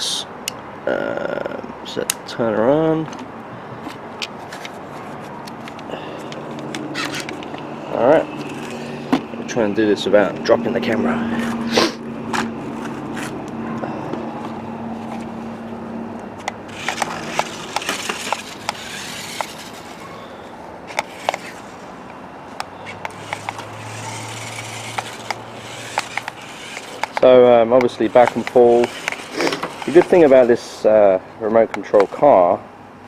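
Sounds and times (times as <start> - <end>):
tyres scraping over ground: 2.9 - 32.6
toy car electric motors: 5.6 - 9.1, 16.4 - 22.0, 22.8 - 31.0, 31.8 - 32.6.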